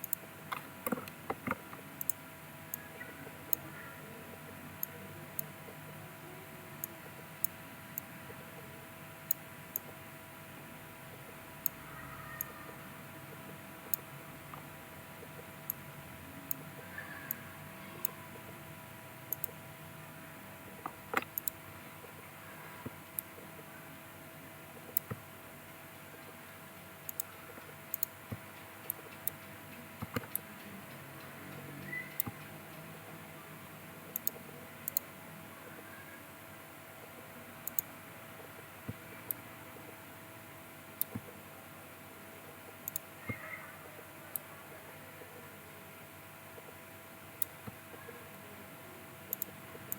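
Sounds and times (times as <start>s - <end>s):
computer mouse clicking: 0.0s - 2.8s, 19.3s - 19.6s, 20.8s - 22.2s, 24.8s - 25.2s, 27.0s - 32.8s, 34.1s - 35.1s, 37.6s - 37.9s, 41.0s - 41.4s, 42.8s - 43.5s, 49.3s - 49.9s
faint electrical hum: 0.0s - 49.9s.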